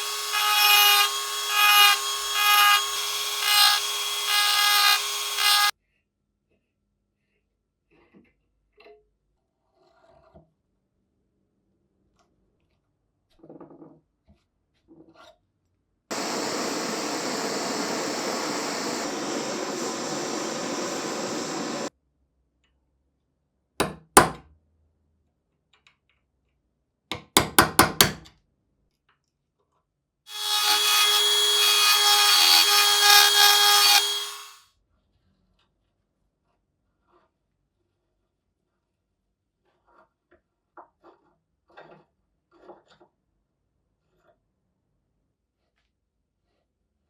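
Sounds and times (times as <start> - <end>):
small power tool whirring: 0.0 - 5.7, 16.1 - 21.9, 30.3 - 34.6.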